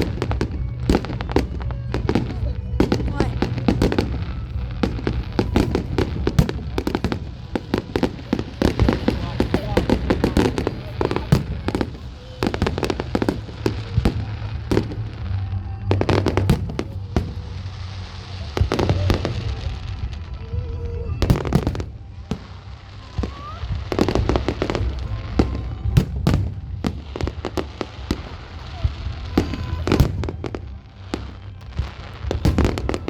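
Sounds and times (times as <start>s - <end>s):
fireworks crackling: 0.0s - 33.0s.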